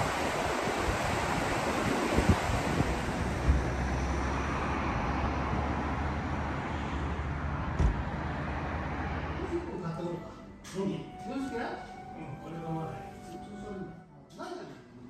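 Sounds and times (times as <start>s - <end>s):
wind buffeting microphone: 0.0s - 6.3s
waterfall roaring: 0.0s - 9.6s.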